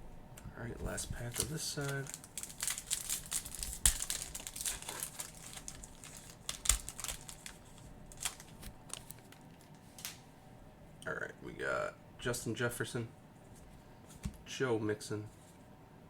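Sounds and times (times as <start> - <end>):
wrapper tearing and crinkling: 1.2 - 10.1.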